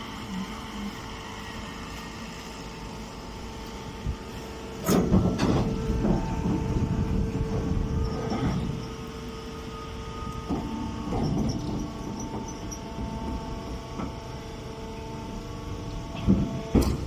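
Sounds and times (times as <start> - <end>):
machinery humming: 0.0 - 17.0
low rumble: 5.0 - 9.0.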